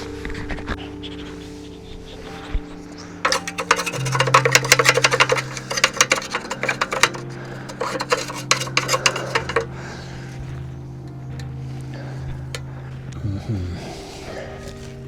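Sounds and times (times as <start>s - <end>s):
metal cookware clattering: 3.2s - 9.7s.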